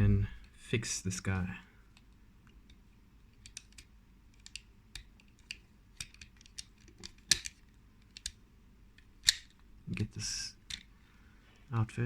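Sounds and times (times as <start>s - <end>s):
plastic toy parts clicking: 2.0s - 8.4s, 9.0s - 9.6s, 10.6s - 10.9s.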